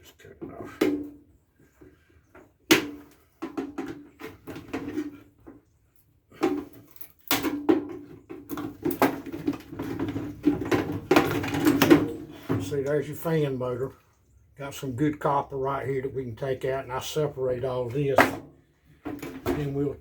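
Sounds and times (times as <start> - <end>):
metal and plastic parts clattering: 6.3 - 12.7, 18.2 - 19.8.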